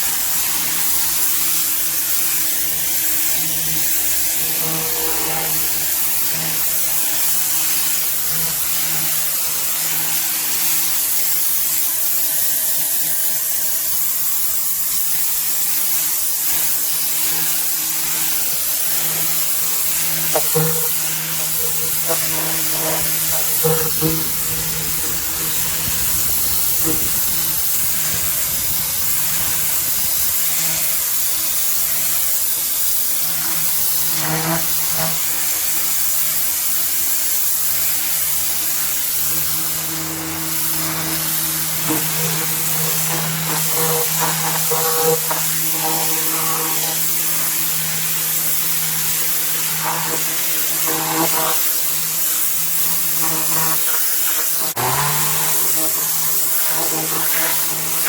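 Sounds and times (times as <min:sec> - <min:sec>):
water jet hissing on paving: 0:00.0 - 0:58.0
pressure washer motor humming: 0:16.5 - 0:36.0, 0:52.0 - 0:58.0.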